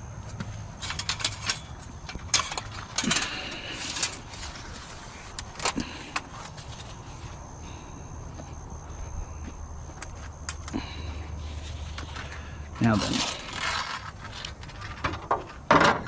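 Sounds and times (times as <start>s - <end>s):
scrap metal clanking: 0.8s - 6.6s.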